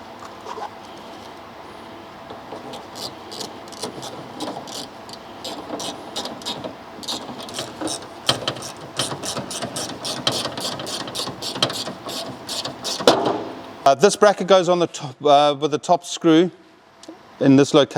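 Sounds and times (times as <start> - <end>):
hand ratchet clicking: 2.7 - 13.1.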